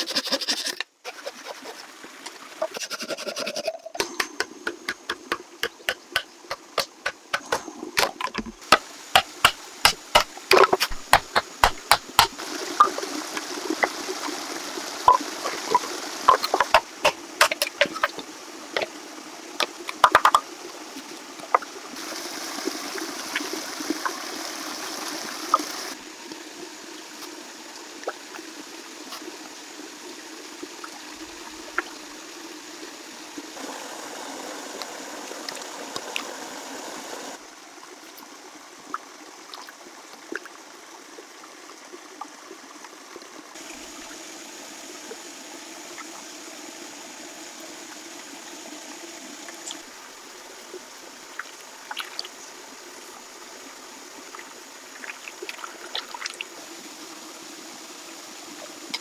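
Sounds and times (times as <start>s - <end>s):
trickling running water: 0.0s - 59.0s
sharp clicks and knocks: 4.0s - 12.4s, 15.1s - 18.2s, 19.6s - 20.4s.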